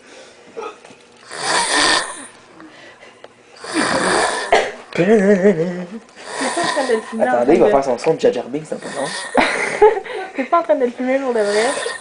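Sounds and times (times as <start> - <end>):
man snoring raspily: 1.2 - 2.3, 3.6 - 4.7, 6.2 - 7.4, 8.7 - 9.6, 11.4 - 12.0.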